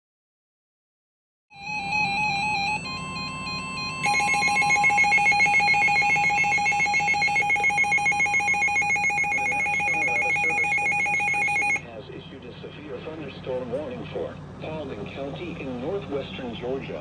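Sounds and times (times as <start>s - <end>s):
electronic trilling alert tone: 1.6s - 11.8s
steady electronic tone: 1.6s - 11.8s.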